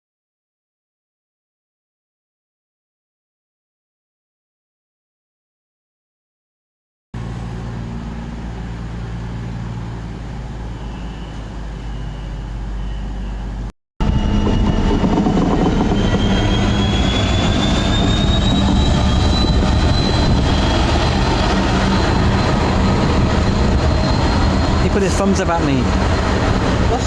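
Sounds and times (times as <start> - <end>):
train humming: 7.2 - 27.0
train whine rising in pitch: 7.2 - 27.0.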